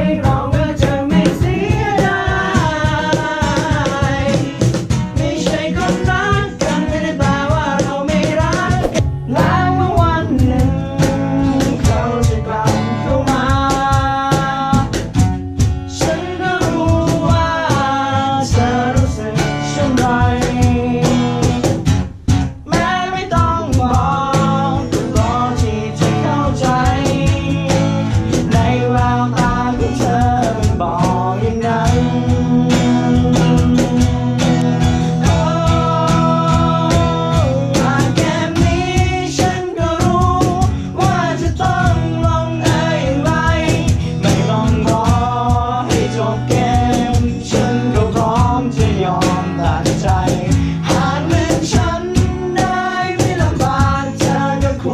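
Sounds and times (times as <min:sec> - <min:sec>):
guitar: 0:00.0 - 0:54.9
steady drum beat: 0:00.0 - 0:54.9
person singing: 0:05.2 - 0:14.8, 0:22.6 - 0:54.9.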